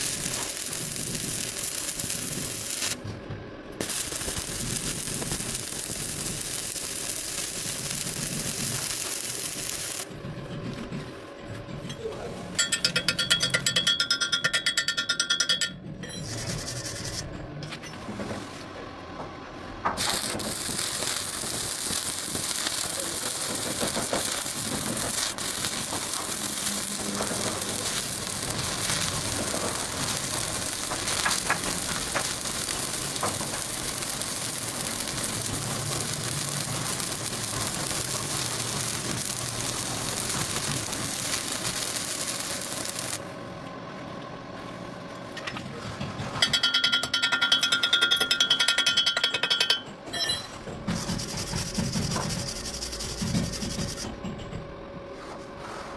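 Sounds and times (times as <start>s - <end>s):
welding arc crackling: 0.0s - 3.0s, 3.8s - 10.1s, 20.0s - 43.2s
harsh buzzing with high whine: 0.0s - 10.2s, 19.8s - 43.7s.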